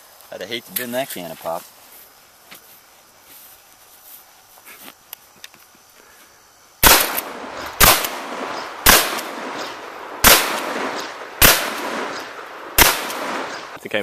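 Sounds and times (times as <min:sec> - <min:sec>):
gunshots with echo: 0:06.8 - 0:13.8.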